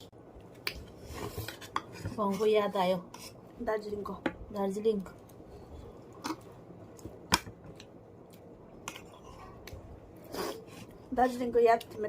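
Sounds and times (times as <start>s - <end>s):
person chewing: 6.0s - 11.0s.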